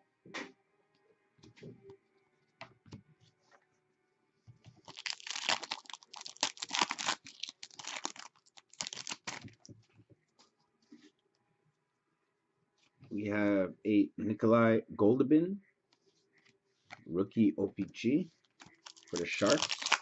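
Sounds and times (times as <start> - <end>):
wrapper tearing and crinkling: 4.8 - 9.6, 18.6 - 20.0.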